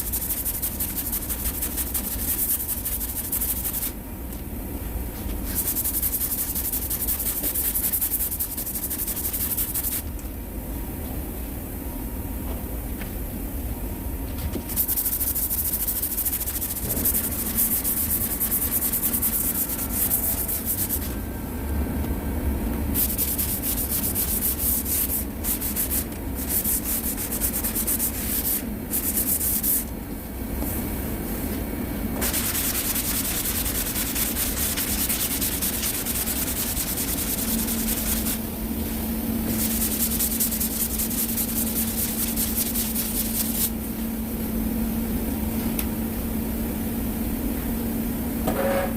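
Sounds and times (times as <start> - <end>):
sandpaper rasping: 0.0 - 4.0, 5.5 - 10.0, 14.7 - 21.1, 23.0 - 29.9, 32.2 - 38.4, 39.6 - 43.7
steady low hum: 0.0 - 48.9.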